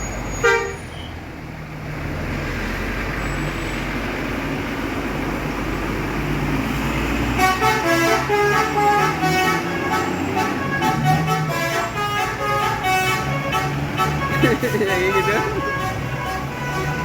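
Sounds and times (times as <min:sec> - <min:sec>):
bus engine running: 0:00.0 - 0:17.0
musical bus horn tune: 0:00.4 - 0:00.9, 0:07.3 - 0:17.0.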